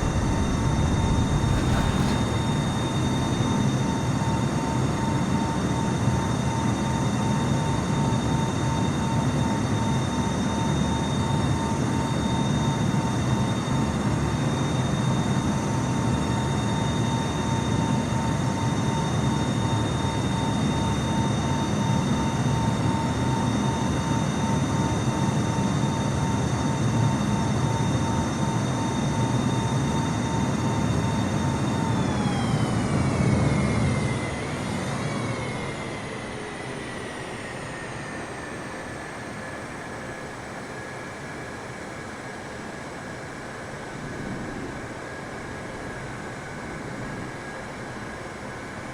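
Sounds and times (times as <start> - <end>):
jet airliner engines running: 0.0 - 48.9.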